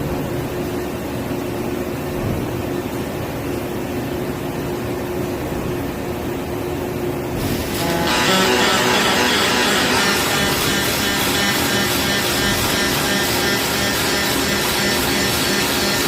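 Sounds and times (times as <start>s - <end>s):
factory machinery humming: 6.8s - 16.0s
bright hiss: 7.4s - 16.0s.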